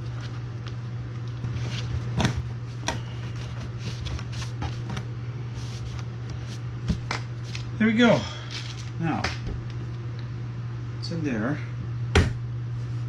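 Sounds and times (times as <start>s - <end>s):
steady low hum: 0.0s - 13.0s
crackles of wiring and tape: 8.5s - 10.3s.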